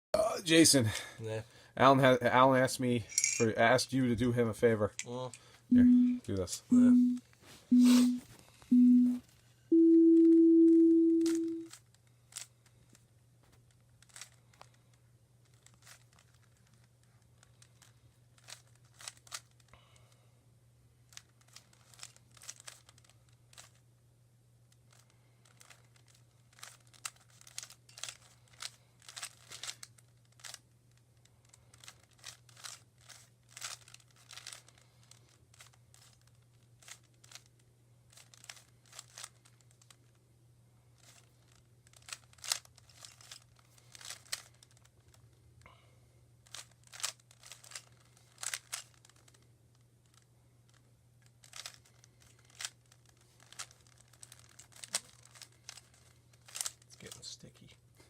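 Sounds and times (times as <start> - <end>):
low steady hum: 0.2 - 58.0
steady beep tone: 5.7 - 11.7
puzzle cube plastic clicks: 13.7 - 14.8, 15.4 - 19.7, 21.1 - 23.8, 24.8 - 40.1, 41.0 - 45.2, 46.4 - 49.4, 50.0 - 57.4.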